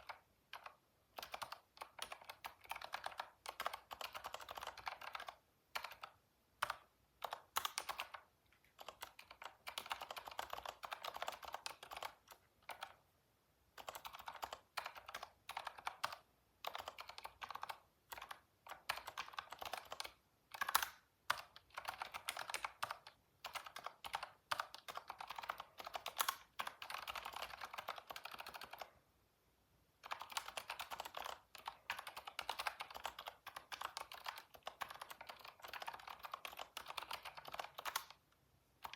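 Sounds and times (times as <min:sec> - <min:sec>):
computer keyboard typing: 0:00.0 - 0:13.0, 0:13.7 - 0:29.0, 0:30.0 - 0:38.2.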